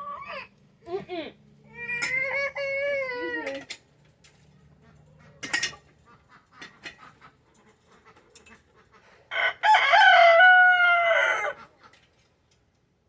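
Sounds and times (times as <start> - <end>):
rooster crowing: 9.3 - 11.7.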